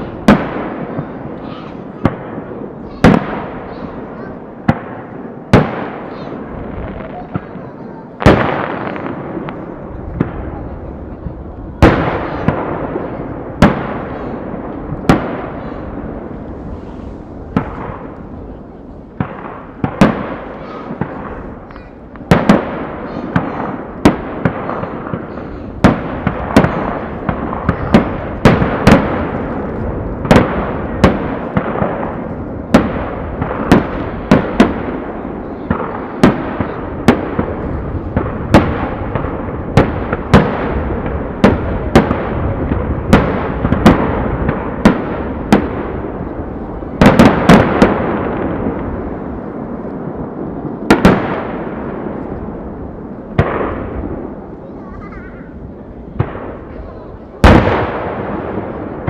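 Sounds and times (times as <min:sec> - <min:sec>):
continuous fireworks rumble: 0:00.0 - 0:59.0.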